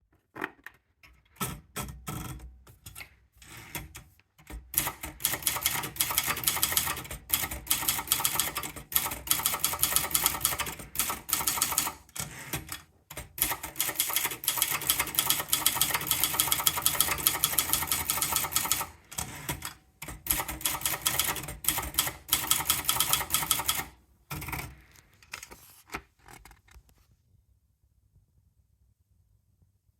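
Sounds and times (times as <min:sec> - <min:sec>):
typewriter key strikes: 0:13.4 - 0:24.7.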